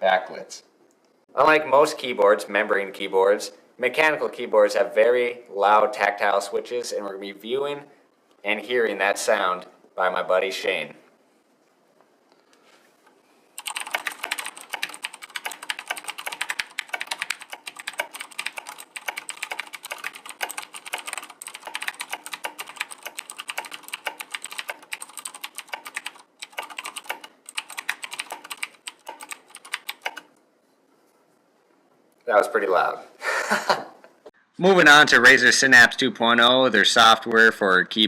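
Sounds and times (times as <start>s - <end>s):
mechanical keyboard typing: 13.6s - 30.3s.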